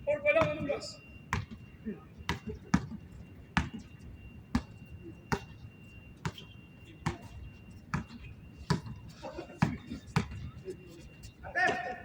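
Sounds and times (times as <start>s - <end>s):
basketball bouncing on court: 0.3s - 1.6s, 2.3s - 3.0s, 3.6s - 3.9s, 4.5s - 5.6s, 6.2s - 7.3s, 7.9s - 9.0s, 9.6s - 10.5s.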